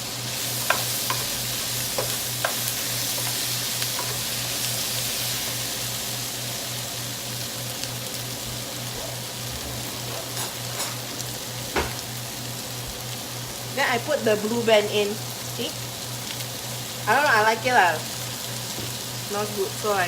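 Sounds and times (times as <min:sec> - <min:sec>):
vegetables sizzling in a pan: 0:00.0 - 0:20.0
spatula scraping a pan: 0:09.0 - 0:11.1.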